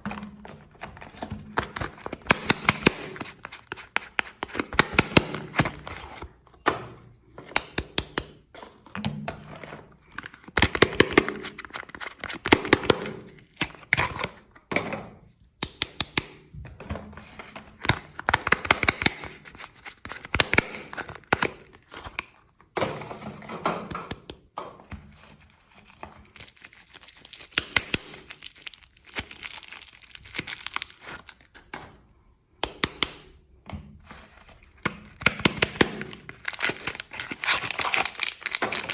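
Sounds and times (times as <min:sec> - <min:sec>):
wrapping crinkling and tearing: 0:25.6 - 0:31.7, 0:35.6 - 0:38.9.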